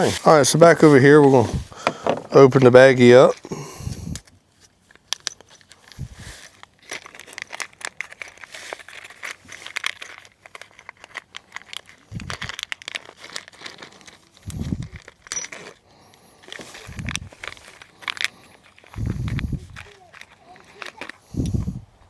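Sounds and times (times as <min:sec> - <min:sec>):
plastic bag crinkling: 0:04.2 - 0:22.0.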